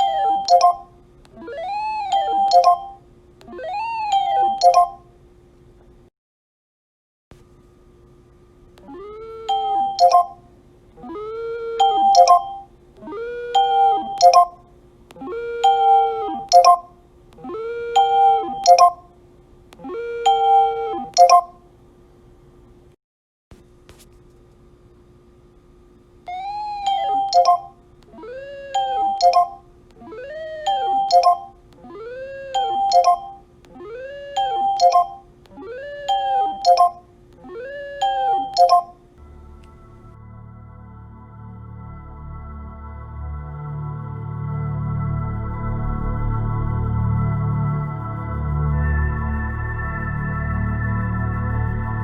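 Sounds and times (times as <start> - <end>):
bright chime-like pings: 0.0 - 0.9, 2.2 - 3.0, 4.2 - 5.0, 9.5 - 10.4, 11.8 - 12.7, 13.6 - 14.6, 15.7 - 16.9, 18.0 - 19.0, 20.4 - 21.6, 26.8 - 27.8, 28.8 - 29.6, 30.7 - 31.6, 32.6 - 33.4, 34.4 - 35.2, 36.1 - 37.0, 38.0 - 39.0
short beeps with clicks: 0.0 - 0.9, 2.2 - 3.0, 4.2 - 5.0, 9.5 - 10.4, 11.8 - 12.7, 13.6 - 14.6, 15.7 - 16.9, 18.0 - 19.1, 20.3 - 21.6, 26.9 - 27.8, 28.8 - 29.6, 30.7 - 31.6, 32.6 - 33.4, 34.4 - 37.0, 38.0 - 39.0
sliding electronic tone: 1.4 - 5.0, 8.8 - 10.4, 11.0 - 14.6, 15.2 - 19.0, 19.8 - 21.5, 26.3 - 40.2
steady hum: 23.6 - 52.0.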